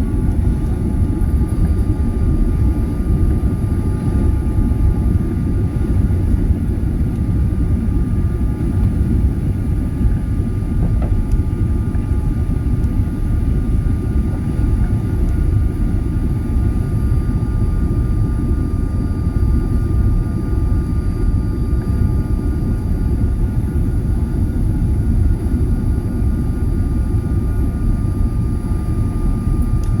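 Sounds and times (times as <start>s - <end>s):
jet engines deep rumble: 0.0s - 30.0s.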